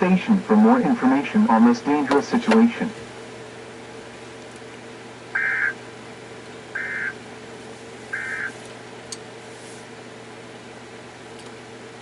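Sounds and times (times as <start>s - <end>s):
warbling digital data bursts: 5.4s - 5.7s, 6.8s - 7.2s, 8.2s - 8.5s.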